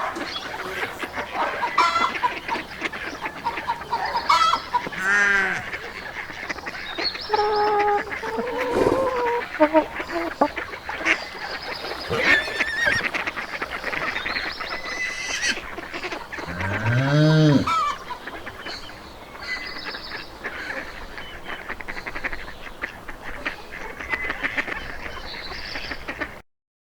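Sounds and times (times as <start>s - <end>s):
geese honking: 0.0s - 18.8s
poultry calling: 0.0s - 18.8s
low drawn-out animal call: 3.9s - 5.9s, 7.2s - 14.2s, 16.4s - 18.0s.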